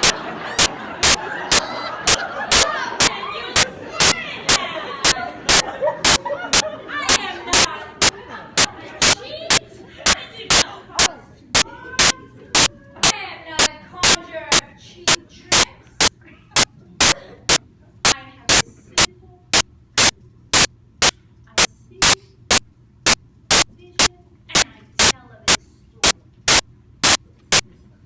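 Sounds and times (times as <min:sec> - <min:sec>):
loud sharp clicks: 0:00.0 - 0:09.2, 0:11.6 - 0:12.7, 0:14.0 - 0:17.6, 0:19.6 - 0:21.2, 0:22.0 - 0:23.7, 0:25.0 - 0:27.7.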